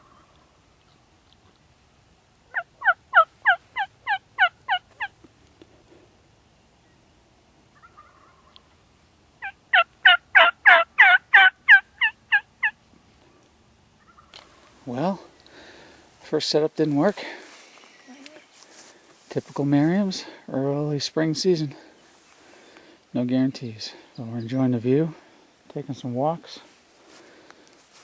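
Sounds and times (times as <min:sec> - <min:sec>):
turkey hen yelps: 0:02.5 - 0:05.1, 0:07.8 - 0:08.7, 0:09.4 - 0:12.8, 0:14.0 - 0:14.4.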